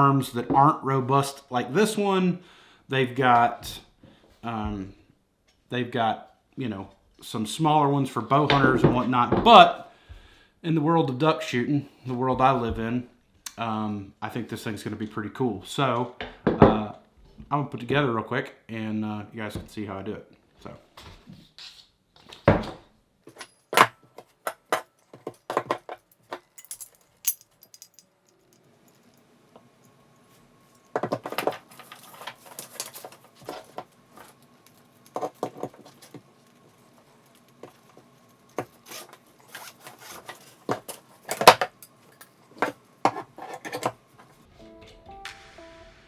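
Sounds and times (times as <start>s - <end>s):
metal parts clicking and rattling: 23.3s - 29.3s, 30.8s - 44.0s.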